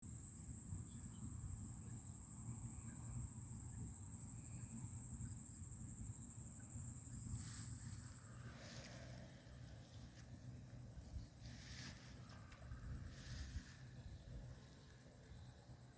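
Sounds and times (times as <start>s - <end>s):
high-pitched insect trill: 0.1s - 15.9s
rustling hiss: 3.9s - 15.9s.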